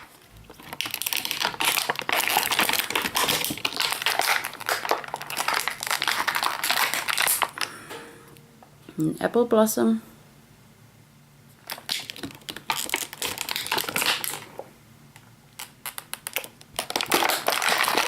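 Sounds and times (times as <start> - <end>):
plastic bag crinkling and rustling: 0.0 - 7.8, 11.6 - 14.7, 15.5 - 18.0.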